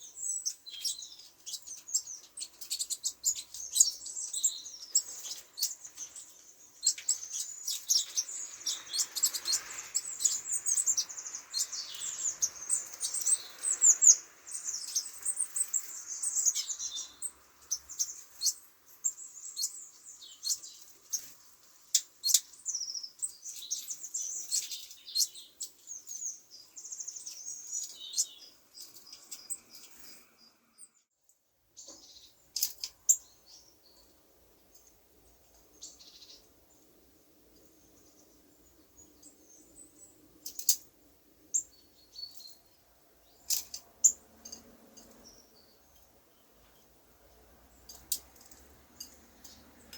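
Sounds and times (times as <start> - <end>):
small songbirds chirping: 0.0 - 49.9
soft background noise rush: 31.5 - 49.9.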